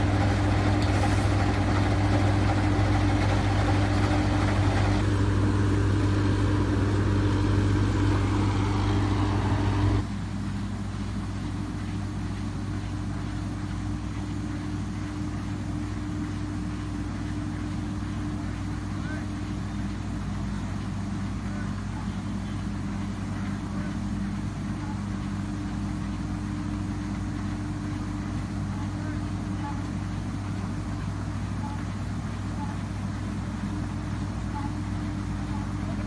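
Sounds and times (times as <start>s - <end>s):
machine motor humming: 0.0s - 10.1s.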